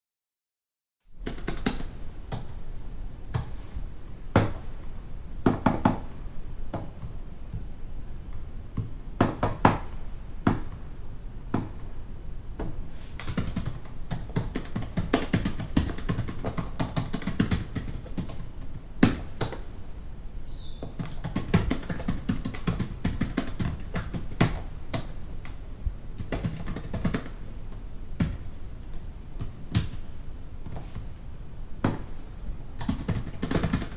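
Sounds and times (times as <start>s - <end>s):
low room hum: 1.0s - 33.9s
computer keyboard typing: 1.2s - 2.6s, 13.2s - 19.6s, 21.0s - 25.6s, 26.2s - 28.4s, 32.8s - 33.9s.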